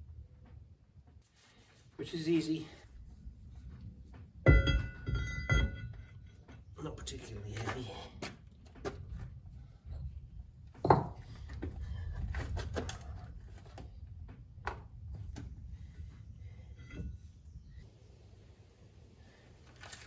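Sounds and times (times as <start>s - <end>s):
low steady rumble: 2.7s - 7.0s.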